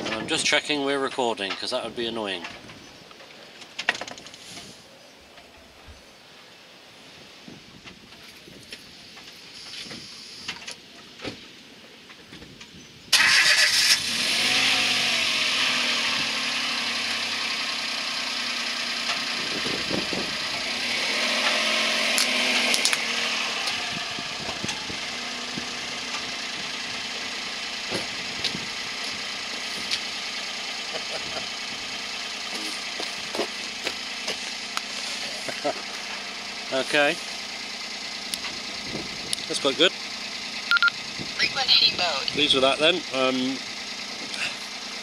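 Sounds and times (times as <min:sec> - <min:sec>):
car engine starting and running: 0:12.6 - 0:45.0.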